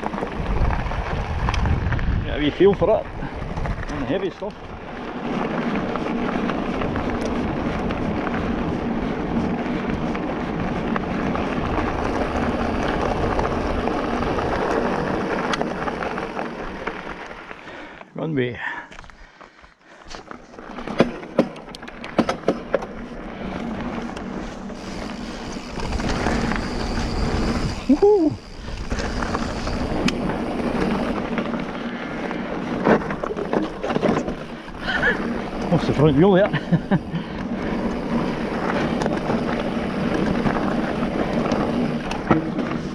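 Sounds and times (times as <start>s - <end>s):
wind noise on microphone: 0.0s - 16.2s, 23.7s - 35.7s
bike tyres rolling on rough track: 0.0s - 42.9s
wind on microphone: 0.2s - 4.0s, 24.8s - 31.2s
bike knocks and rattles: 20.8s - 23.0s, 32.6s - 35.1s, 40.1s - 42.9s.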